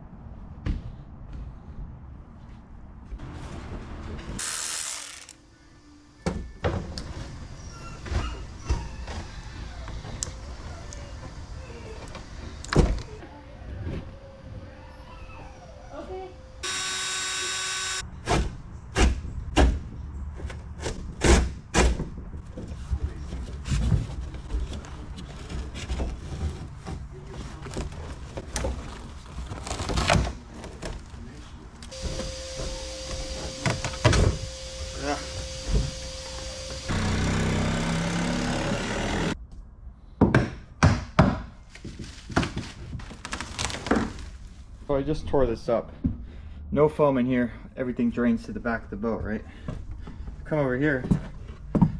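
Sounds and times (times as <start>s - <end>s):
power tool running: 4.4s - 5.4s, 16.6s - 18.0s, 31.9s - 39.4s.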